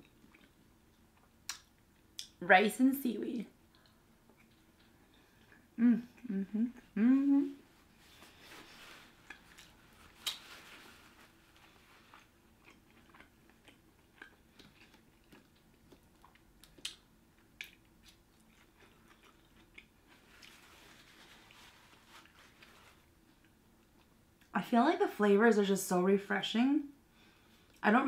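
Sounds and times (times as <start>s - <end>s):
person chewing: 0.0s - 2.3s, 3.7s - 7.0s, 9.1s - 24.2s.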